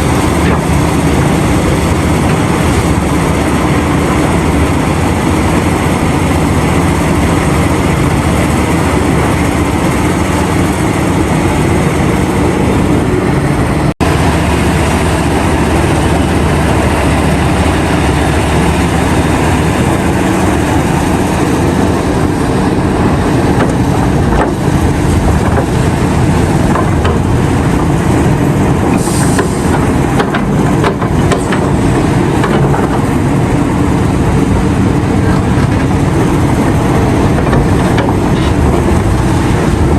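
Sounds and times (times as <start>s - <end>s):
heavy diesel engines running: 0.0s - 39.9s.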